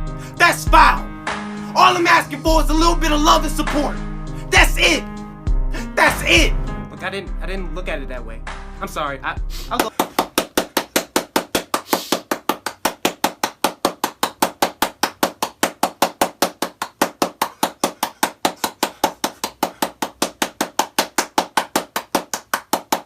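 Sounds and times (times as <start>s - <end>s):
rapid even sharp taps: 9.8s - 23.0s.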